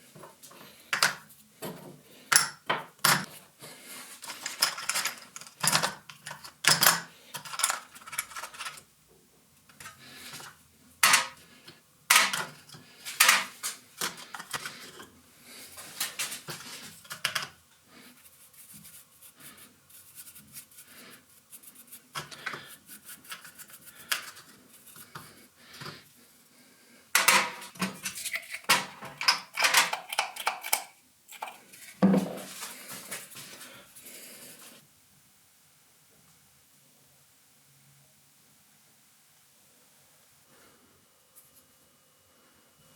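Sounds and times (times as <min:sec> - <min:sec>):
metal parts clinking and scraping: 0:04.2 - 0:08.8, 0:09.7 - 0:11.4, 0:12.1 - 0:15.0, 0:27.2 - 0:32.0.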